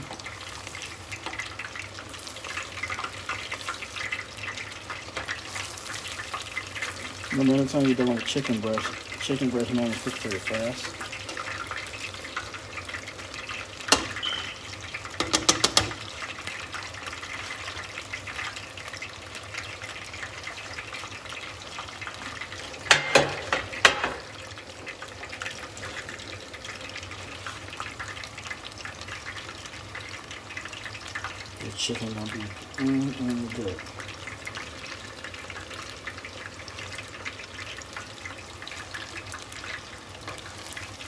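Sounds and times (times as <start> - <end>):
chicken sizzling in hot oil: 0.0 - 41.0.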